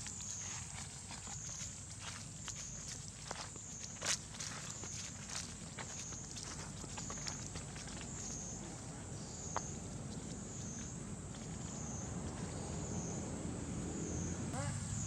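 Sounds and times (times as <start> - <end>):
high insect drone: 8.0 - 15.0.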